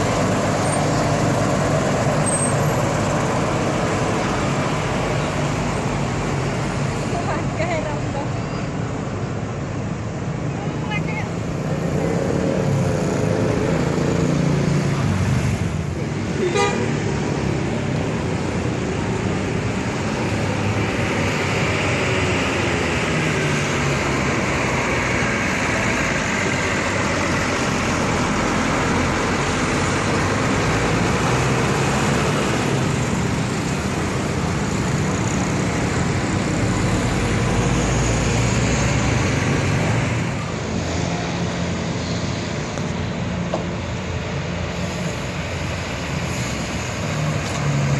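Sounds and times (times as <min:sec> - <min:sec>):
bus diesel engines running: 0:00.0 - 0:47.9
road traffic: 0:00.0 - 0:47.9
bus horn toots: 0:16.4 - 0:17.0.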